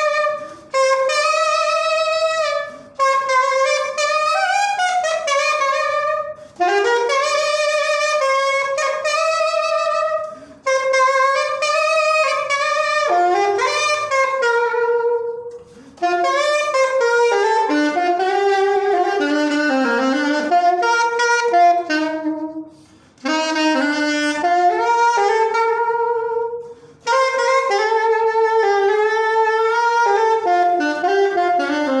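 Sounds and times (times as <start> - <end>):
solo saxophone melody: 0.0 - 32.0.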